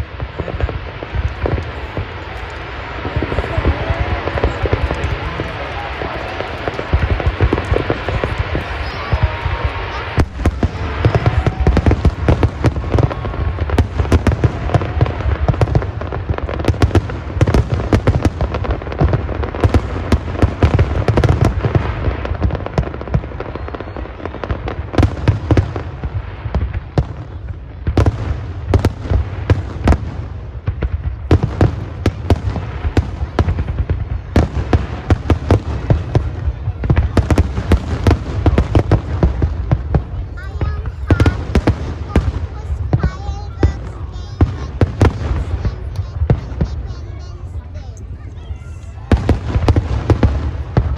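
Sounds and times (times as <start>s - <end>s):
fireworks cracks and bangs: 0.0s - 50.9s.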